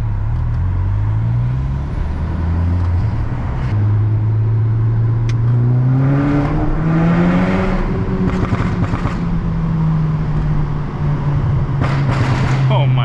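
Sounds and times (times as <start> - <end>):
car engine accelerating: 0.0 - 13.0.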